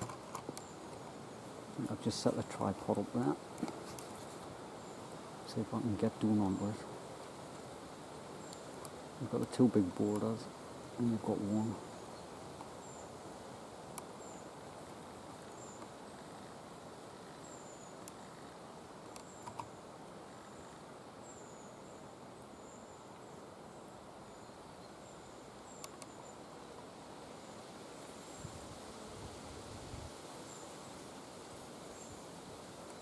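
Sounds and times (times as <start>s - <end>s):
faint clicks: 0.0s - 1.0s, 8.4s - 9.5s, 13.9s - 14.1s, 15.4s - 16.0s, 18.0s - 18.3s, 19.1s - 19.8s, 25.7s - 26.2s
small bird calling: 15.4s - 27.6s.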